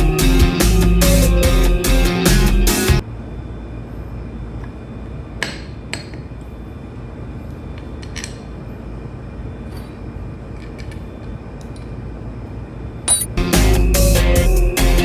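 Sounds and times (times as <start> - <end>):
rock music: 0.0 - 3.0
low background noise: 3.0 - 13.3
tools clinking on metal: 13.1 - 13.3.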